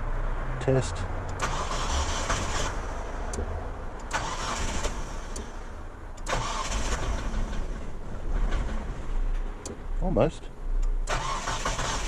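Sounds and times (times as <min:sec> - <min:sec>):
car engine cranking on starter: 0:01.3 - 0:03.4, 0:04.0 - 0:09.1, 0:11.0 - 0:12.0.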